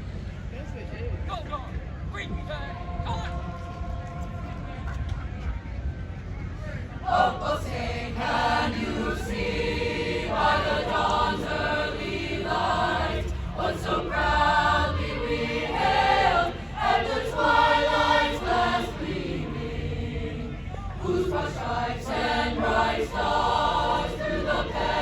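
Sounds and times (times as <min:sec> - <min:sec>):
steady low rumble: 0:00.0 - 0:25.0
group of voices singing: 0:07.1 - 0:25.0.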